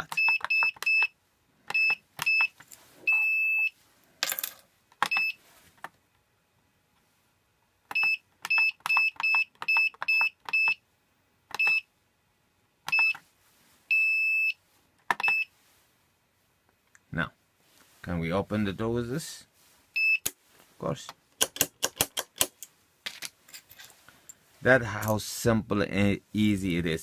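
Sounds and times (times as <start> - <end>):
keypad beeping: 0.0 - 3.7, 5.0 - 5.4, 7.9 - 10.8, 11.5 - 11.9, 12.9 - 13.2, 15.1 - 15.5.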